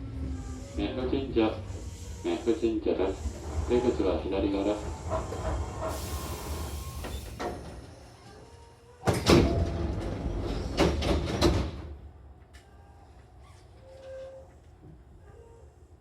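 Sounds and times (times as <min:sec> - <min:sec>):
air hiss: 0:00.3 - 0:07.7
sliding doors clattering: 0:03.2 - 0:08.0, 0:09.1 - 0:12.0.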